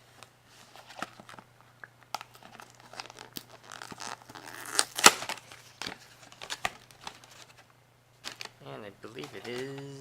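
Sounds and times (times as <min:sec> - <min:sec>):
cardboard packaging tearing and crinkling: 0:02.5 - 0:05.4.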